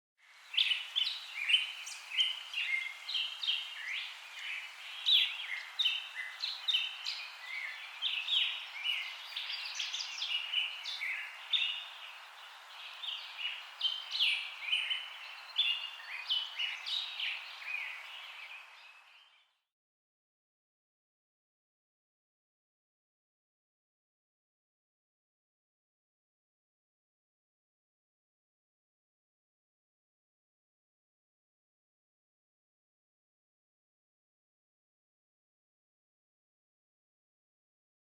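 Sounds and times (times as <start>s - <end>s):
faint steady hiss: 0.2s - 19.4s.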